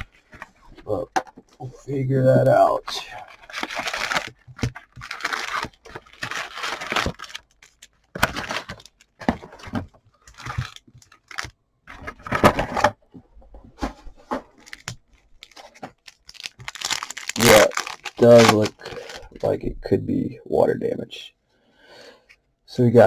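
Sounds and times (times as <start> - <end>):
cardboard tearing and crinkling: 3.3 - 11.5, 14.6 - 19.4.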